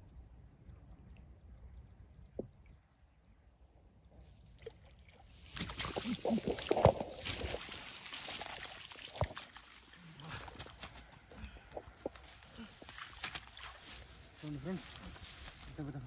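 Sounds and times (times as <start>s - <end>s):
water splashing and sloshing: 4.4s - 16.0s.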